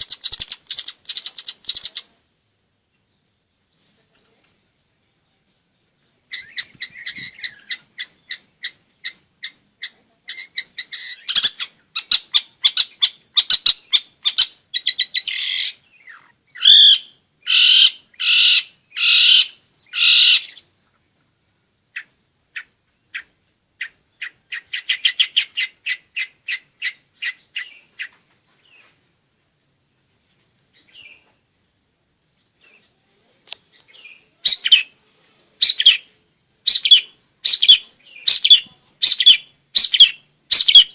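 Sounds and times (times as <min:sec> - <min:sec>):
harsh bird calls: 0:00.0 - 0:02.1, 0:05.8 - 0:21.0, 0:21.9 - 0:28.9, 0:33.6 - 0:40.9
bird chattering song: 0:00.0 - 0:02.2, 0:02.9 - 0:21.0, 0:21.8 - 0:28.9, 0:30.3 - 0:31.5, 0:33.6 - 0:40.9.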